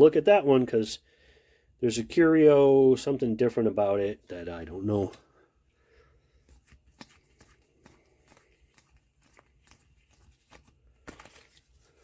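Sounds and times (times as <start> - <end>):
trading cards clicking and rustling: 6.4 - 12.0.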